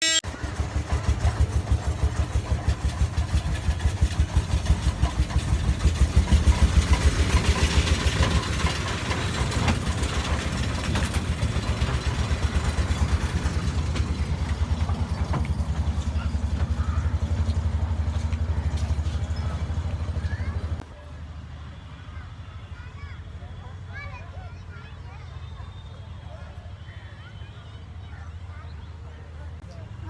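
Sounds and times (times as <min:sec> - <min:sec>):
toy train engine pulsing: 0:00.0 - 0:17.3.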